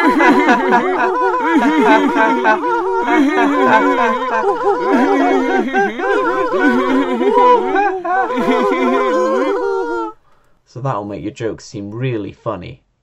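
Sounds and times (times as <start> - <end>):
layered man laughing: 0.0 - 10.2.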